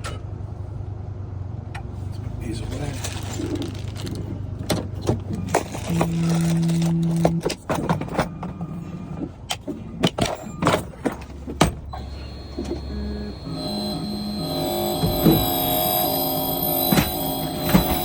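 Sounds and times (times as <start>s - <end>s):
tools and keys clattering: 2.8s - 8.5s
low hum: 11.6s - 18.0s
music with stepped tones: 12.0s - 18.0s.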